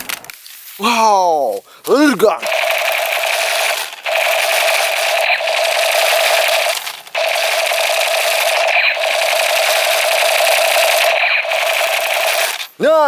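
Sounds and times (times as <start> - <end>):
toy gun rattling and buzzing: 2.4 - 12.8.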